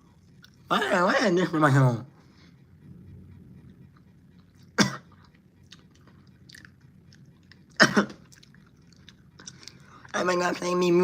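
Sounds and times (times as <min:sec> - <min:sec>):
person chewing with wet clicks: 0:00.2 - 0:00.6, 0:03.9 - 0:10.2
person coughing: 0:04.8 - 0:05.2, 0:07.8 - 0:08.2.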